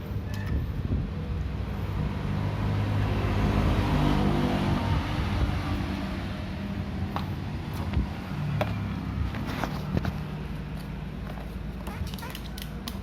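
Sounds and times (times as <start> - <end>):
vehicle engine passing: 1.3 - 11.1.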